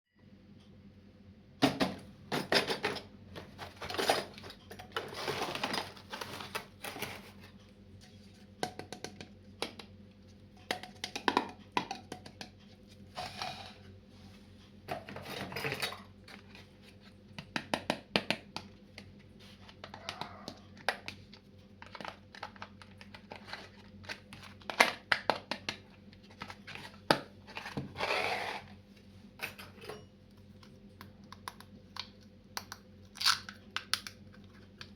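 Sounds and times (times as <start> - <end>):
packaging rustling: 5.0 - 7.4.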